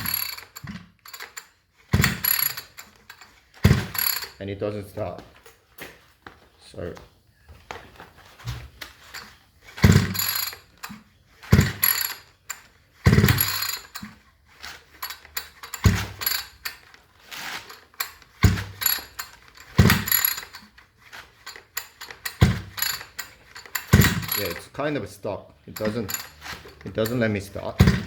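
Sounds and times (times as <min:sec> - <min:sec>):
engine pull-starter rasping: 0:00.0 - 0:02.9, 0:09.8 - 0:12.3, 0:13.0 - 0:14.2, 0:18.4 - 0:20.7, 0:21.6 - 0:24.7, 0:25.7 - 0:28.0
starter mechanism clicking: 0:00.0 - 0:04.4, 0:09.8 - 0:14.2, 0:15.0 - 0:20.8, 0:21.4 - 0:24.7, 0:25.7 - 0:28.0.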